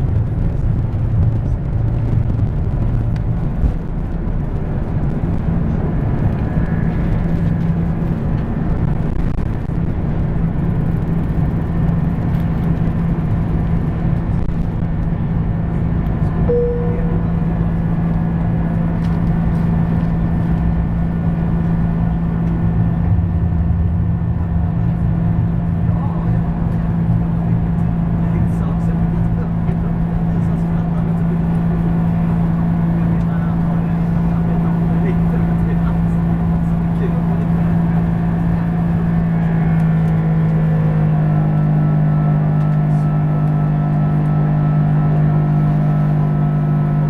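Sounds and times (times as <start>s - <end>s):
jet engines roaring: 0.0s - 46.7s
single cabin tone: 16.5s - 17.8s.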